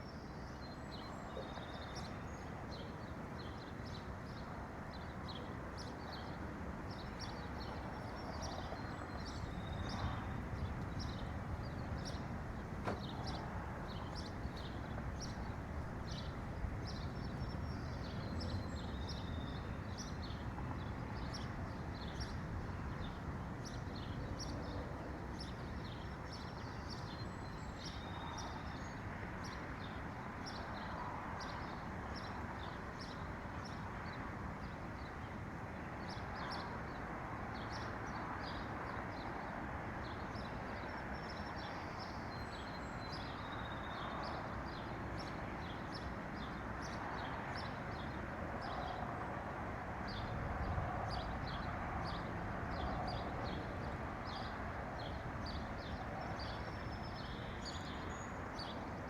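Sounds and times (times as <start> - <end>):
songbirds chirping: 0.1 - 34.2, 50.1 - 59.0.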